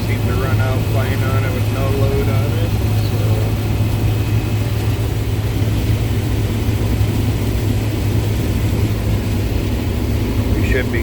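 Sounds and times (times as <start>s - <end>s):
tractor engine running: 0.0s - 11.0s.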